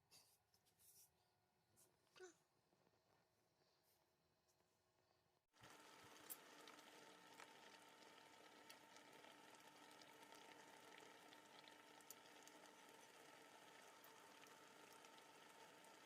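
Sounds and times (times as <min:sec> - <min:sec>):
food hissing and popping on stove: 0:05.6 - 0:16.0.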